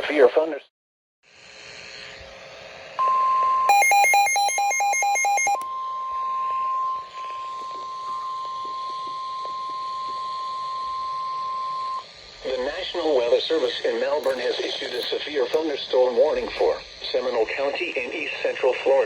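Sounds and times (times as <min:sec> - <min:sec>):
rapid two-pitch electronic beeping: 0:03.0 - 0:11.4
steady high alarm tone: 0:03.0 - 0:14.7.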